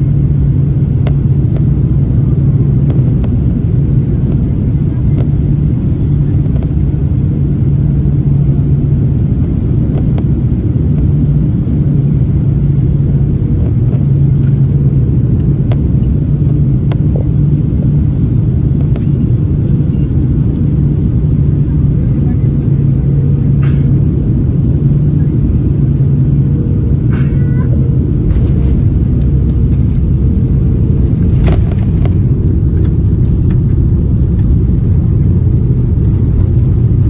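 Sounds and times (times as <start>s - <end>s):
airliner cabin rumble: 0.0s - 37.0s.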